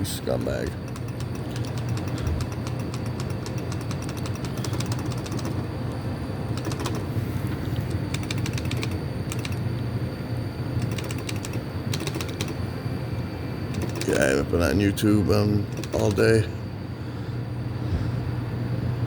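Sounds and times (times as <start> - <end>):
slot machine clicking: 0.3 - 5.7, 6.5 - 7.1, 7.9 - 9.7, 10.8 - 12.6, 13.7 - 14.5, 15.6 - 16.4.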